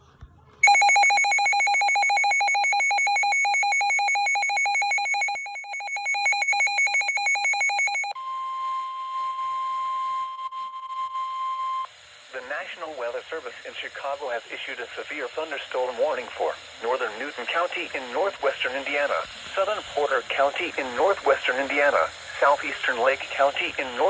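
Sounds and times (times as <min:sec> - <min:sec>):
rapid electronic alarm beeping: 0:00.6 - 0:08.2
steady alarm tone: 0:00.6 - 0:11.9.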